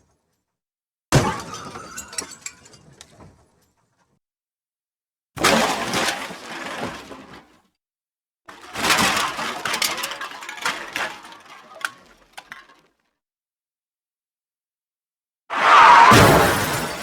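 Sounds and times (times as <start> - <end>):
car crash impact and crunching: 15.6 - 17.0.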